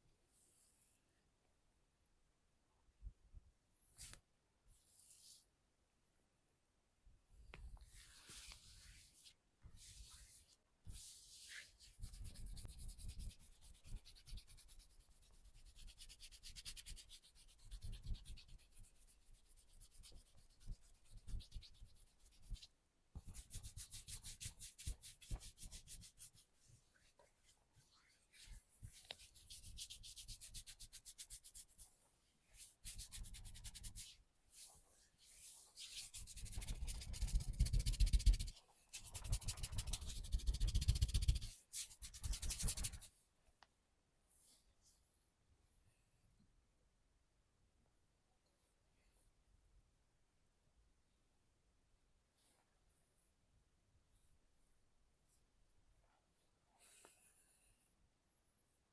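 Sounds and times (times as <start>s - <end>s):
hands rubbing skin: 7.9s - 43.1s.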